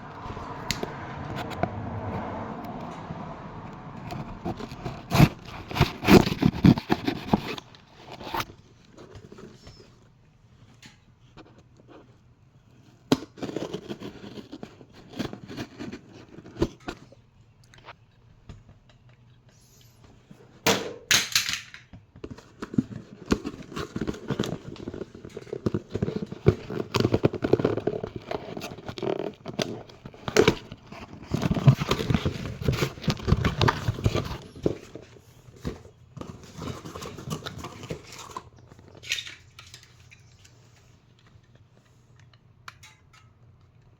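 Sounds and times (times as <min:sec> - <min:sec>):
packaging crinkling and rustling: 0:04.1 - 0:10.1, 0:13.2 - 0:17.2, 0:22.2 - 0:41.8.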